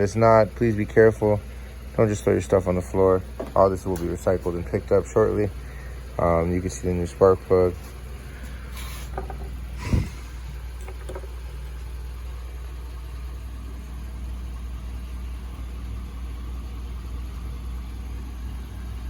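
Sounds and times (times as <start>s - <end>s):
low mechanical hum: 0.0s - 19.0s
loud thump: 3.4s - 3.6s.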